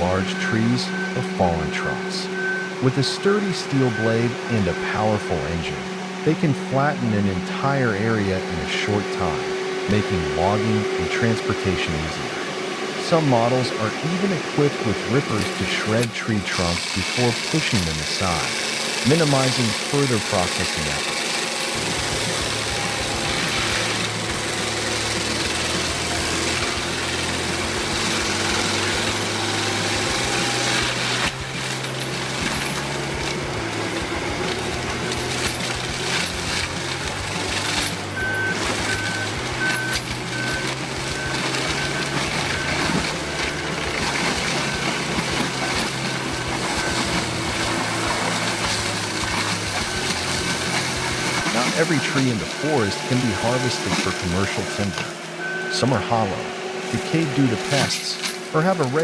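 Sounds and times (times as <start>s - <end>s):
short high beeps: 0.0s - 3.0s, 3.8s - 5.0s, 38.2s - 43.0s, 51.4s - 56.4s
heavy machinery engine running: 0.0s - 59.0s.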